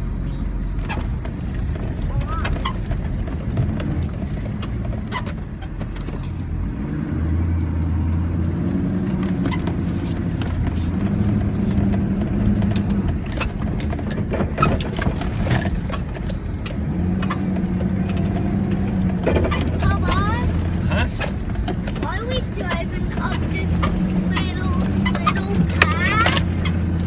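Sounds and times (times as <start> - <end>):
vehicle engine running: 0.0 - 27.0
clicks and knocks on rough ground: 0.8 - 6.5, 8.7 - 27.0.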